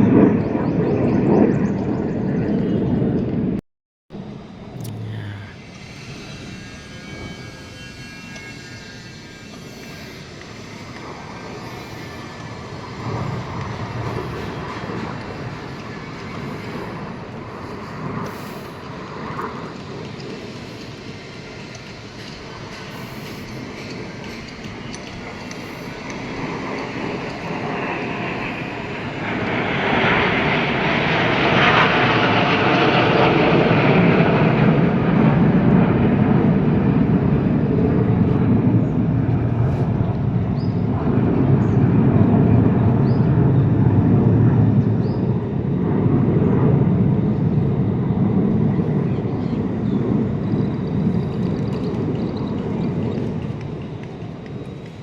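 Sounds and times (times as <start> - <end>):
jet aircraft flying past: 0.0 - 55.0.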